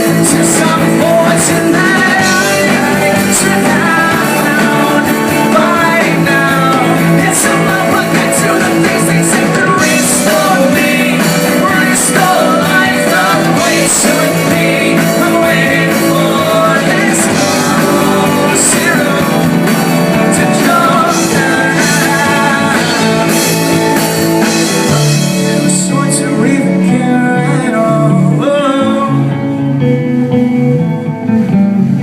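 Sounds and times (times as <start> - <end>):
live rock band playing: 0.0 - 32.0
person singing: 0.0 - 32.0.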